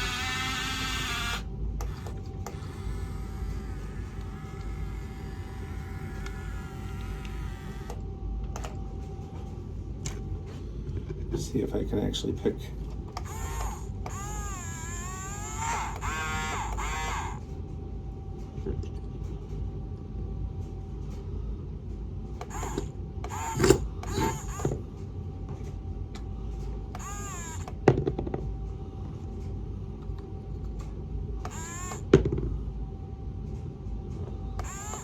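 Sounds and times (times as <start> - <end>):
short high-pitched squeals: 0.0 - 8.0, 13.2 - 17.4, 22.4 - 24.7, 27.0 - 27.7, 31.5 - 32.0, 34.6 - 35.0
small electric motors whining: 0.0 - 8.0, 13.0 - 17.5, 22.4 - 24.8, 26.9 - 27.8, 31.4 - 32.2, 34.6 - 35.0.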